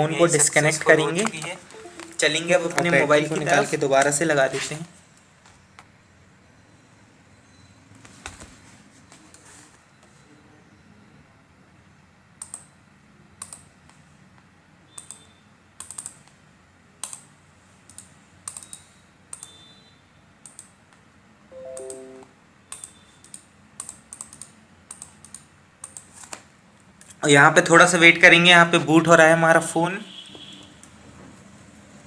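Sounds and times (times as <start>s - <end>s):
sharp clicks: 12.4s - 12.7s, 13.4s - 13.7s, 15.0s - 16.4s, 17.0s - 17.3s, 17.9s - 19.6s, 20.4s - 20.8s, 22.7s - 26.1s.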